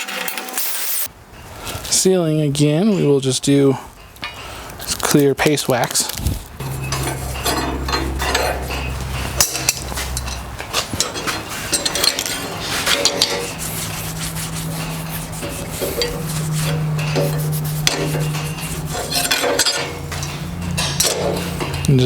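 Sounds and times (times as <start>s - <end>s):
steel clinking and scraping: 2.6s - 22.0s
steady low hum: 6.2s - 22.0s.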